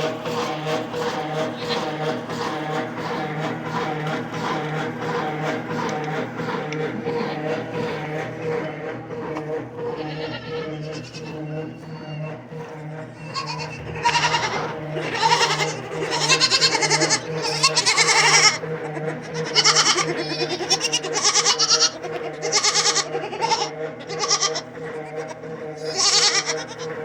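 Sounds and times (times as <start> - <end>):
steady low hum: 0.0 - 27.0
goats bleating: 1.4 - 2.1, 6.9 - 8.7, 9.3 - 27.0.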